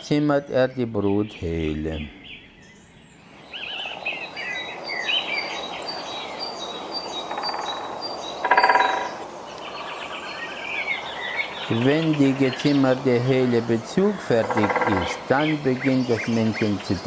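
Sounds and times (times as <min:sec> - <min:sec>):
small birds chirping: 0:00.0 - 0:17.0.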